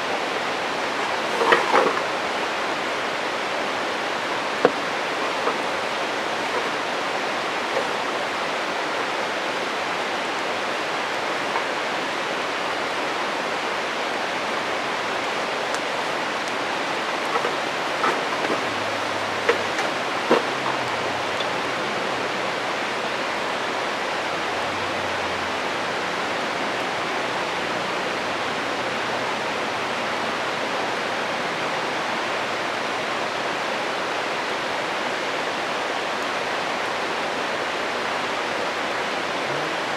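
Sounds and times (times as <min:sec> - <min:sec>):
stream rushing: 0:00.0 - 0:39.9
campfire crackling and popping: 0:00.2 - 0:12.7, 0:14.2 - 0:23.7.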